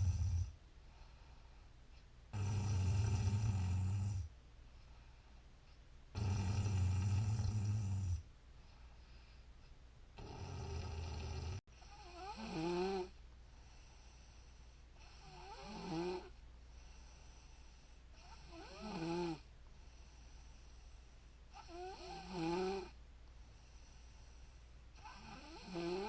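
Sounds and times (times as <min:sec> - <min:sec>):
woman snoring: 0:00.0 - 0:00.5, 0:02.3 - 0:04.3, 0:06.2 - 0:08.2, 0:10.2 - 0:13.2, 0:15.0 - 0:16.3, 0:18.2 - 0:19.4, 0:21.6 - 0:23.0, 0:25.0 - 0:26.0.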